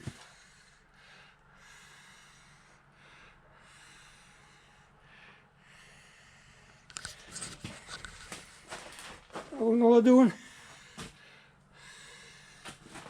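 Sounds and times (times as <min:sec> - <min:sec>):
soft breathing: 0:00.0 - 0:09.5, 0:10.3 - 0:13.0
low steady hum: 0:00.0 - 0:13.0.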